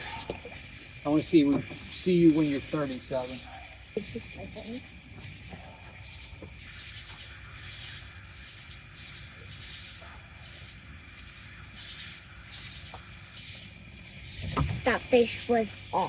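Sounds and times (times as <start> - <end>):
night insects chirping: 0.0 - 16.0.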